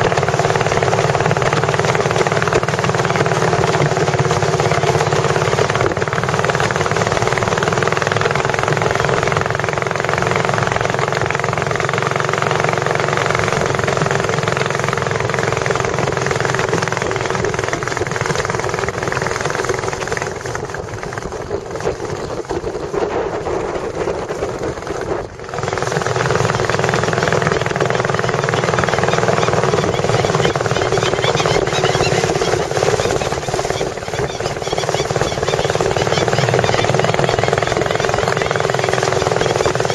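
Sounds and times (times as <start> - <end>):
boat engine rattling drone: 0.0 - 39.9.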